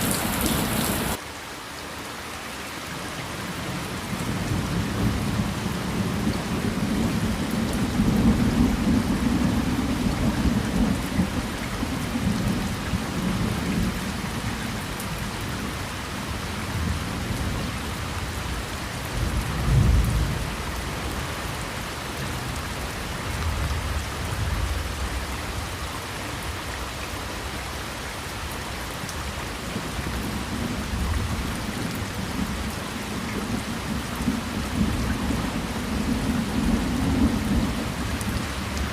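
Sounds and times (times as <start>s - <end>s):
heavy rain on a car: 0.0s - 38.9s.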